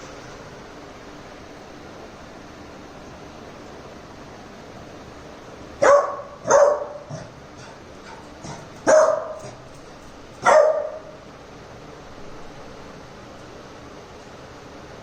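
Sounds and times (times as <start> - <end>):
puppy barking: 5.8 - 9.7, 10.4 - 11.2.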